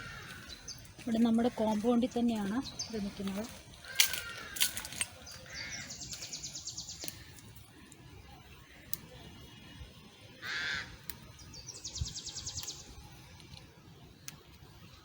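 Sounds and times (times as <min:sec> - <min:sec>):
crow cawing: 0:00.0 - 0:00.7, 0:03.8 - 0:06.1, 0:10.4 - 0:11.0.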